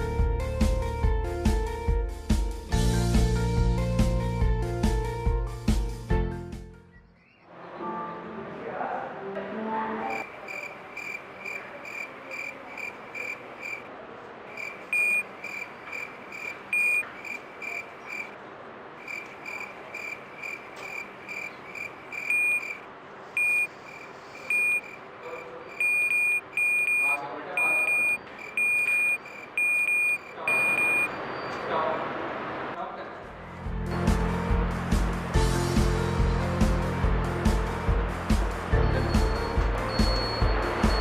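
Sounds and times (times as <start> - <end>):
electronic alarm buzzer beeping: 10.1 - 13.9, 14.5 - 18.4, 19.0 - 22.8, 23.4 - 31.4, 38.8 - 41.0.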